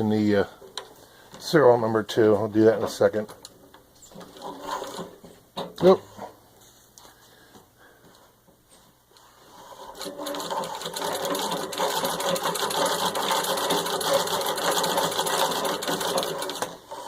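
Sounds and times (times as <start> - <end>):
treadle sewing machine clatter: 4.2 - 5.2, 9.8 - 17.0.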